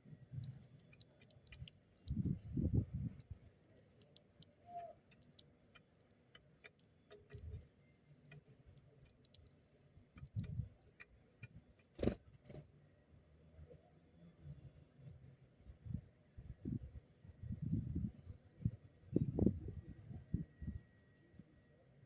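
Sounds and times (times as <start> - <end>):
birds pecking at seed: 0.0 - 22.0.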